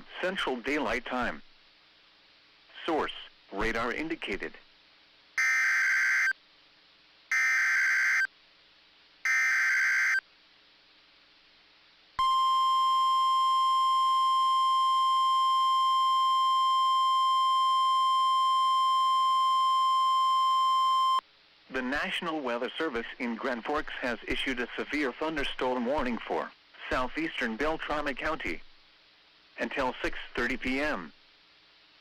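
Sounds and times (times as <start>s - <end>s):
steady warning alarm tone: 5.4s - 6.4s, 7.3s - 8.3s, 9.2s - 10.2s.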